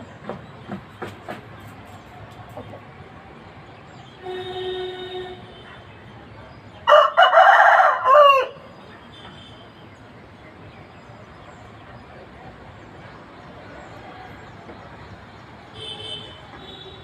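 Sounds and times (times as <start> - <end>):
rooster crowing: 6.9 - 8.6.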